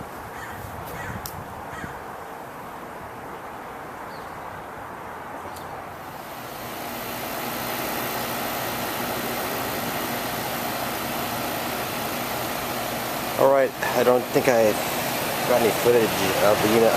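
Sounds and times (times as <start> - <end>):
air conditioner fan rushing: 0.0 - 1.9, 5.6 - 16.9
compressor humming: 5.8 - 16.9.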